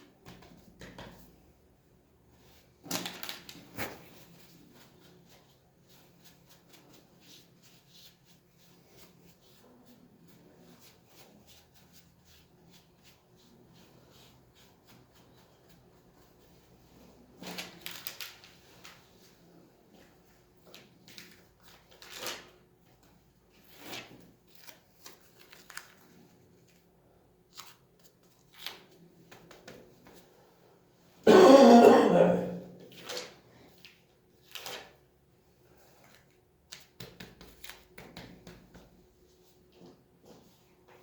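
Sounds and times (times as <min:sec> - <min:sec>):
person throat-clearing cough: 0:31.3 - 0:32.8.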